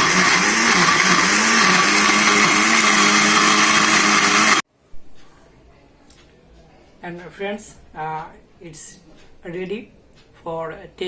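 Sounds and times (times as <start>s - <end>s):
kitchen blender running: 0.0s - 4.6s.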